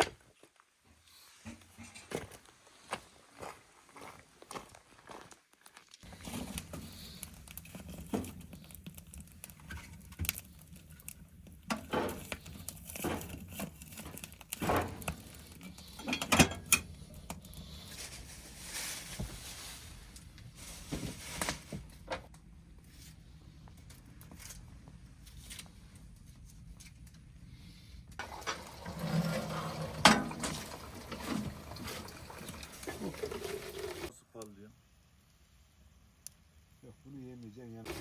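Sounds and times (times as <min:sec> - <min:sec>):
cooking clicks and crackles: 0:05.9 - 0:18.2, 0:28.1 - 0:34.5.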